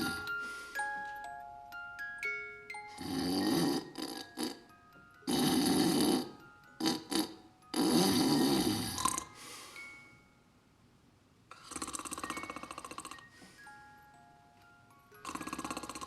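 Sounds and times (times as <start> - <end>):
cartoon snoring: 0.0 - 0.3, 2.9 - 9.4, 11.5 - 13.3, 15.2 - 16.0
light chiming music: 0.0 - 10.8, 12.0 - 16.0.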